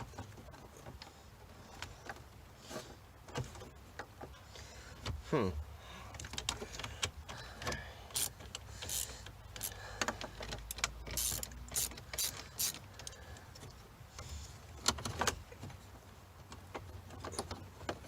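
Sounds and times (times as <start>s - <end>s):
plastic parts clicking and rattling: 6.1s - 13.8s.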